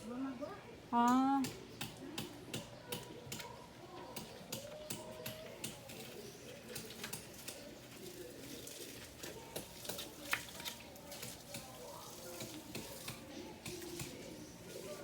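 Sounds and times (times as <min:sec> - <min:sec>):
faint distant voices: 0:00.0 - 0:15.0.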